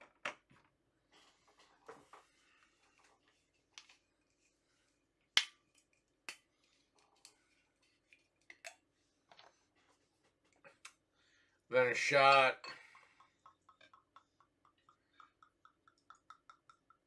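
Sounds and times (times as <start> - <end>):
glass bottles clicking and knocking: 12.2 - 17.0.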